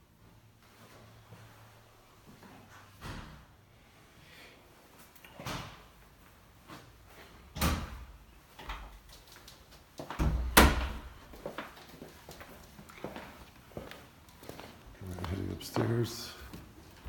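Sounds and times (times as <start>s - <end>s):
doors opening and shutting: 7.5s - 9.0s, 10.1s - 11.2s.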